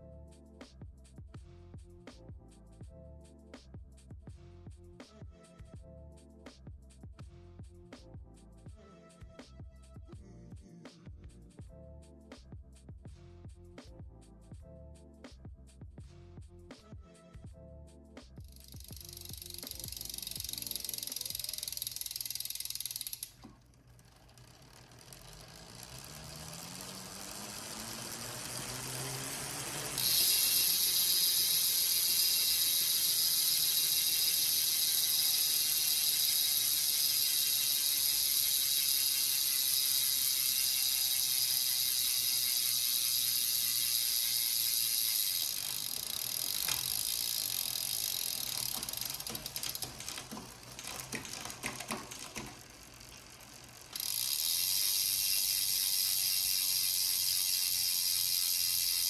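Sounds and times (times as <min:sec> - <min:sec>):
bike freehub buzzing: 0:18.4 - 0:59.0.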